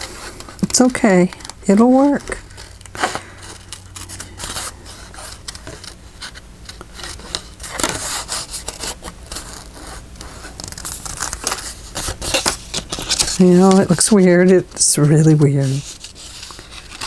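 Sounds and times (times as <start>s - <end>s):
paper rustling: 0.0s - 17.0s
scissors snipping paper: 6.7s - 17.0s.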